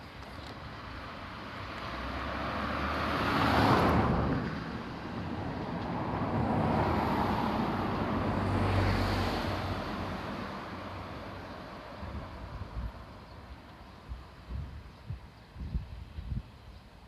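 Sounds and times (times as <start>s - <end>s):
diesel railcar running past: 1.9s - 14.5s.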